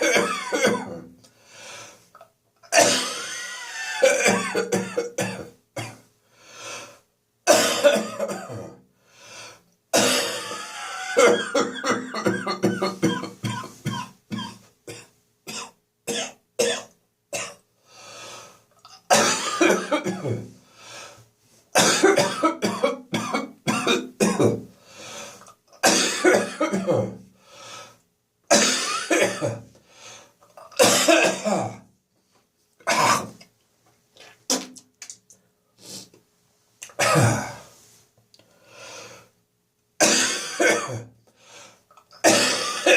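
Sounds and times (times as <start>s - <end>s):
person coughing: 0.0s - 1.1s, 2.7s - 6.0s, 7.5s - 8.8s, 10.0s - 17.6s, 18.9s - 20.5s, 21.8s - 24.6s, 25.8s - 27.2s, 28.5s - 29.7s, 30.6s - 31.8s, 32.8s - 33.4s, 36.8s - 37.7s, 40.0s - 41.1s, 42.1s - 42.9s.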